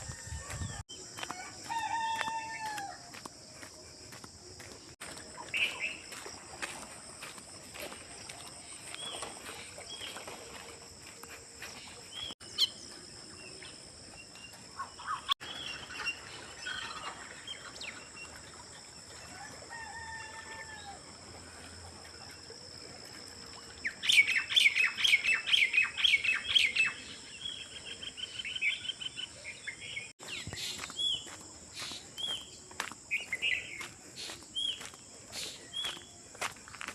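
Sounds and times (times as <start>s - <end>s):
songbirds chirping: 2.6s - 18.7s, 23.8s - 36.9s.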